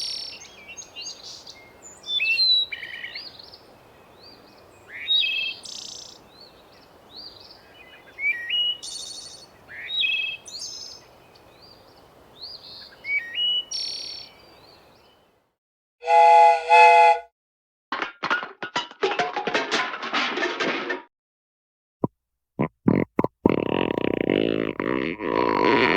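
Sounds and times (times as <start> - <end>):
birds chirping: 0.0 - 15.2
light breeze: 0.0 - 15.5
model train steam whistle toots: 16.0 - 17.3.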